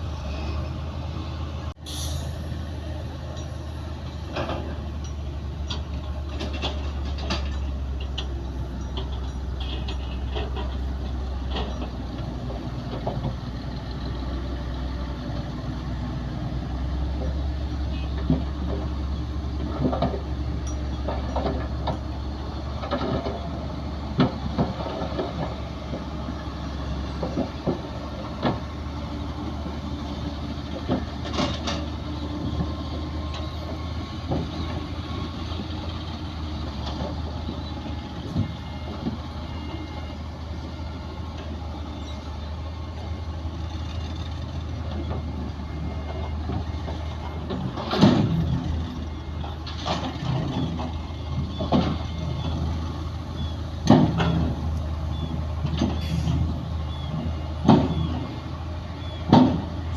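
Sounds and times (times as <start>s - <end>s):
diesel earthmoving machinery running: 0.0s - 59.9s
metallic clanks and knocks: 4.3s - 13.5s, 18.1s - 26.1s, 30.7s - 34.8s, 46.0s - 52.6s, 53.4s - 56.4s, 59.2s - 59.9s.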